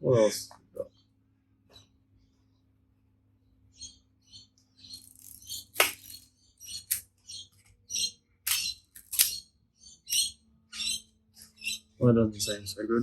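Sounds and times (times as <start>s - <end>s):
camera mechanism clicking and ratcheting: 5.0s - 6.2s, 8.5s - 9.4s.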